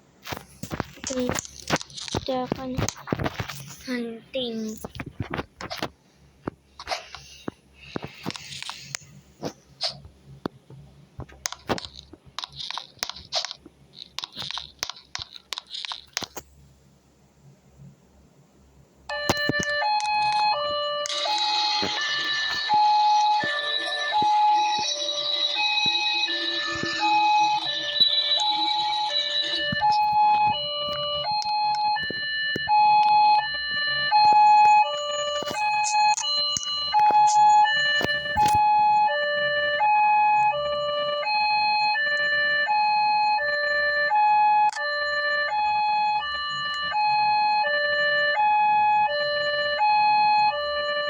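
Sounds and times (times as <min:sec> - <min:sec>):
electronic two-tone siren: 0:19.1 - 0:51.0.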